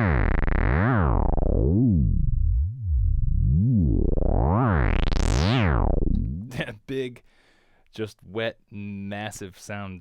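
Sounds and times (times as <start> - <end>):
wobbling synthesizer bass tone: 0.0 - 6.6.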